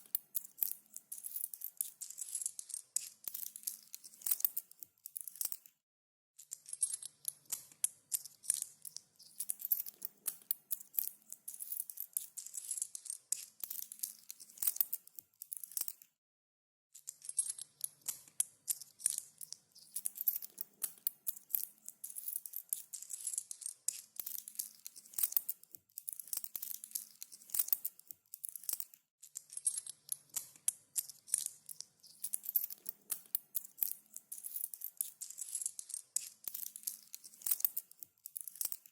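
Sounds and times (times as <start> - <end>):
coins jingling: 9.4 - 12.7, 19.9 - 23.2, 32.2 - 38.9.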